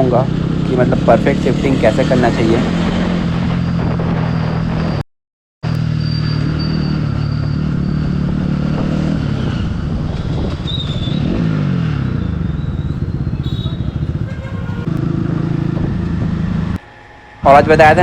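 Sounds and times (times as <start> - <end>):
motorcycle engine running: 7.4 - 16.9.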